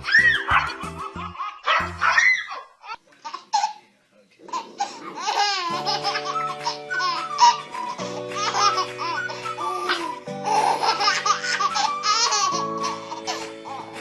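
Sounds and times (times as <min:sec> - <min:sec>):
background music of held chords: 0:00.0 - 0:02.2, 0:05.6 - 0:14.0
baby laughing: 0:00.0 - 0:03.8, 0:04.5 - 0:14.0.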